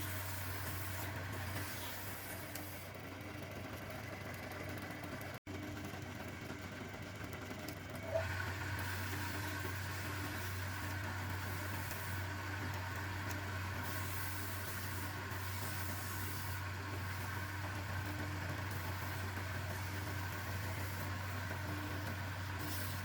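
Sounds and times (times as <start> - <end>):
electric motor humming: 8.1 - 23.0.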